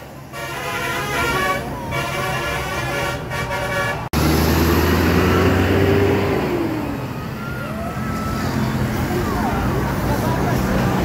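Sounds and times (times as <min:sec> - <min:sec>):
bus passing with low drone: 0:00.0 - 0:11.0
multi-tone musical bus horn: 0:00.2 - 0:04.1.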